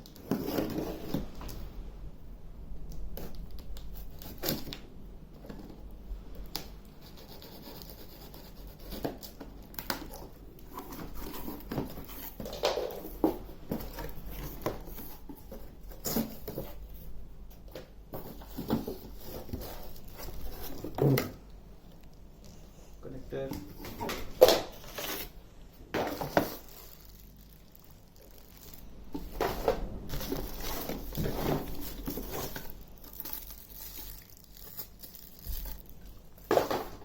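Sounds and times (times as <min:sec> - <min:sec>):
cardboard scraping: 0:00.2 - 0:01.6, 0:07.0 - 0:21.4, 0:23.3 - 0:37.0
packaging rustling: 0:17.6 - 0:22.6, 0:26.0 - 0:37.0.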